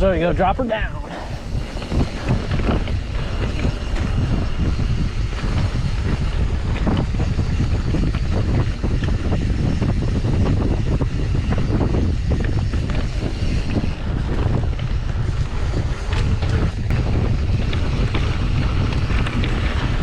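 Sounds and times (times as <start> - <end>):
wind buffeting microphone: 0.0 - 20.0
bike clicks and rattles: 1.1 - 20.0
tyres rolling on dirt: 12.7 - 20.0.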